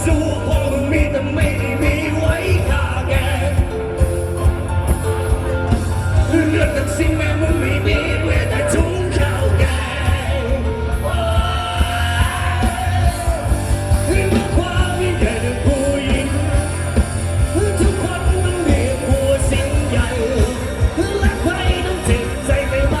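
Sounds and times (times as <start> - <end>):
heavy bass: 0.0 - 23.0
live band playing: 0.0 - 23.0
steady drum beat: 0.0 - 23.0
person singing: 6.2 - 23.0.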